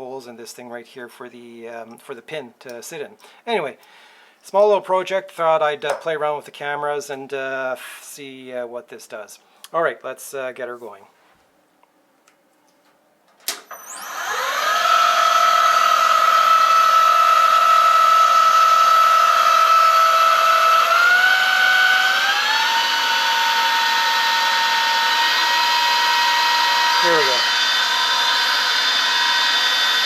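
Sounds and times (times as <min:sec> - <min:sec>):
metal lathe whining: 0:13.7 - 0:30.0.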